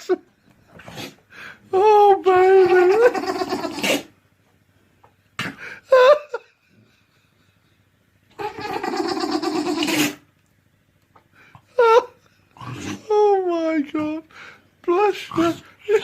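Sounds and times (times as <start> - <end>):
animal long hoarse call: 2.6 - 4.2, 8.3 - 10.2
animal squeaky calls: 8.4 - 10.2.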